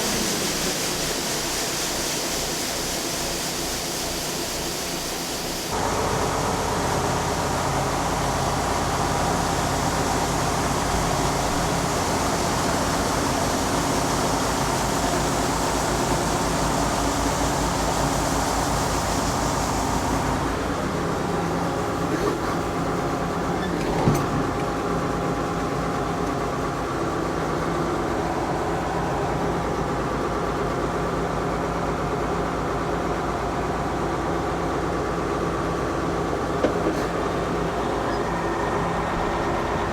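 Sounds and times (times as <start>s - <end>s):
tractor engine running: 5.7s - 39.9s.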